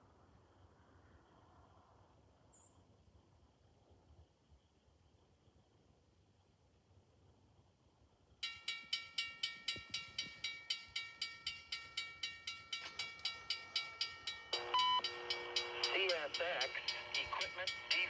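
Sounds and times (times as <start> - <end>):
railroad crossing bell ringing: 8.4 - 18.0
locomotive horn: 14.5 - 17.9.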